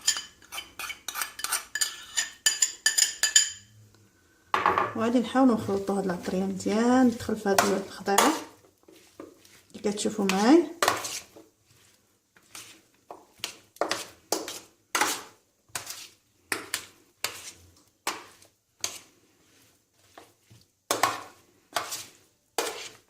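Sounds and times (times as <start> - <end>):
vegetables tossed in marinade: 5.6 - 23.0.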